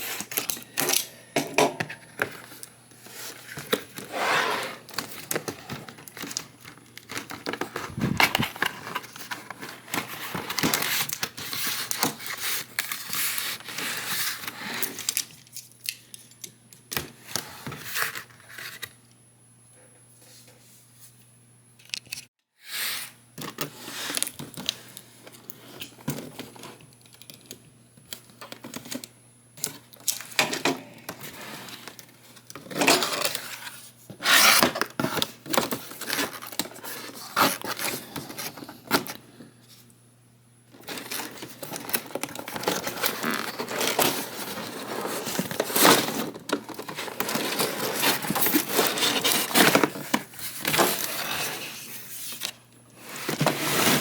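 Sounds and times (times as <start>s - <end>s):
packaging rustling and tearing: 4.8s - 15.6s, 40.8s - 54.0s.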